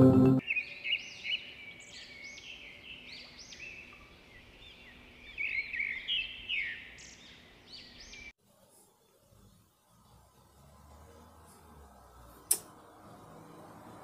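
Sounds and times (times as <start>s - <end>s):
songbird chirping and trilling: 0.4s - 8.4s.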